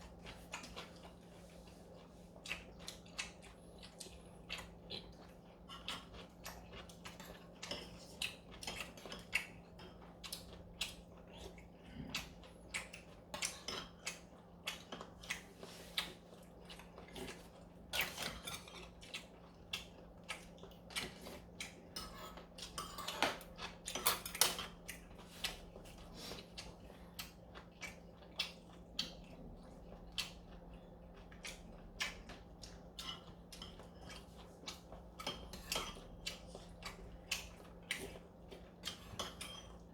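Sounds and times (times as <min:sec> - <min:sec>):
cutlery clinking on bowls: 0:22.0 - 0:24.7, 0:38.8 - 0:39.8.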